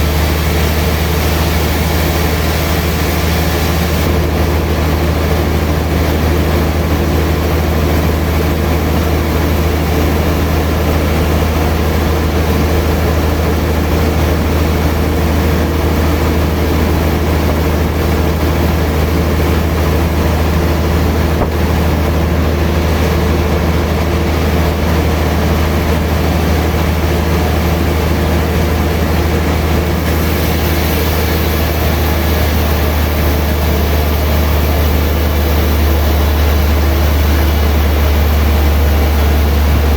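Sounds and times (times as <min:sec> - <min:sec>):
sawmill machinery humming: 0:00.0 - 0:39.9
high hiss: 0:29.9 - 0:39.9.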